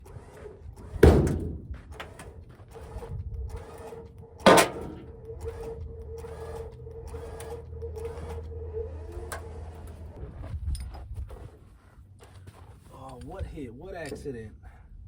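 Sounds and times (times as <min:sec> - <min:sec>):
low hum: 0:00.1 - 0:11.7
loud bangs: 0:03.5 - 0:07.4.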